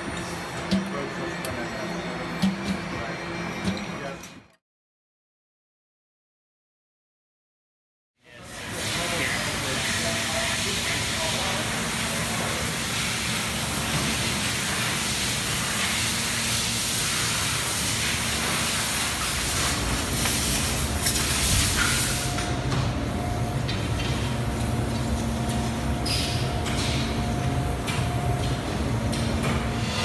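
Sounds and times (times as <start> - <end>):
machinery low hum: 0.0 - 4.4, 8.3 - 30.0
machinery hiss: 8.4 - 22.5.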